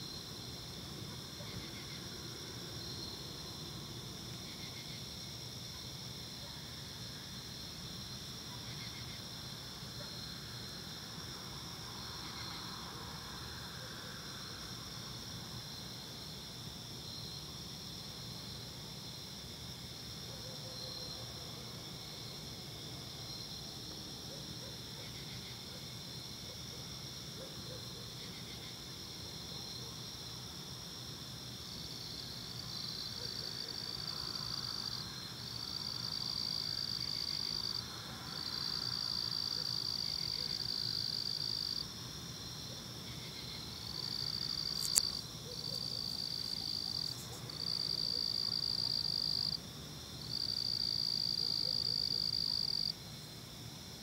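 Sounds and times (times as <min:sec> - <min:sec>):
crickets trilling: 0:20.8 - 0:54.0.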